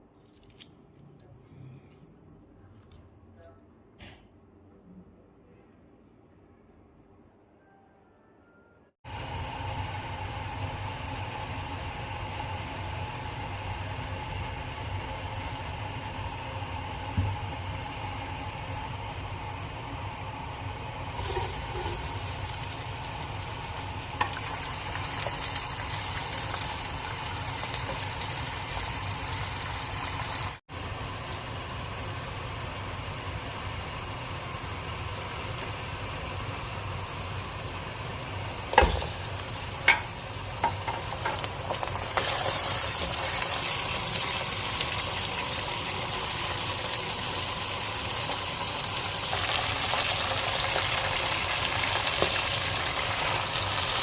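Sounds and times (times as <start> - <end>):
food sizzling in hot oil: 17.0 - 54.0.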